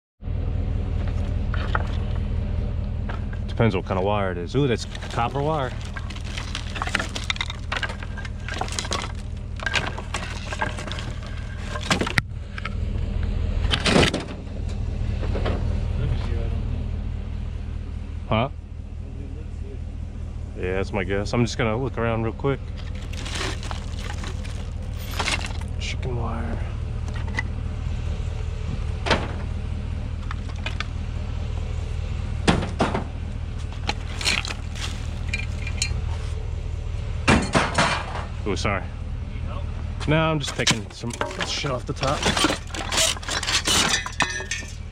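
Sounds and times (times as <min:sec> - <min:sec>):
low engine hum: 0:00.2 - 0:44.9
junk rattling and clattering: 0:04.6 - 0:12.2, 0:13.7 - 0:14.5, 0:22.6 - 0:25.9, 0:32.4 - 0:36.3, 0:37.3 - 0:38.4, 0:40.4 - 0:44.9.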